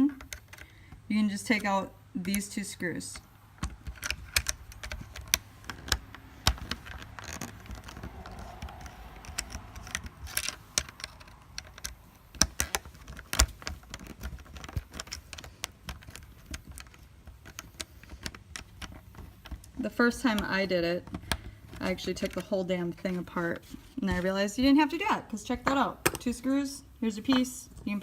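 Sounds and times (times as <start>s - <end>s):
parts knocking when set down: 27.2s - 27.7s.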